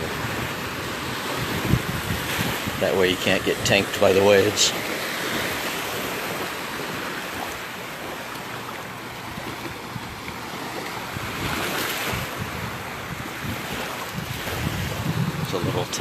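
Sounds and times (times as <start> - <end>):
wind buffeting microphone: 0.0 - 8.1, 8.9 - 16.0
surf washing onto beach: 0.0 - 16.0.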